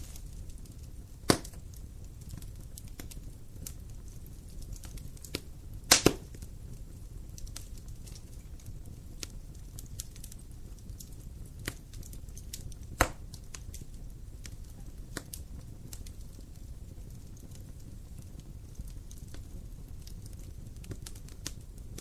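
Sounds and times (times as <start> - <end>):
wood fire crackling and popping: 0.0 - 22.0.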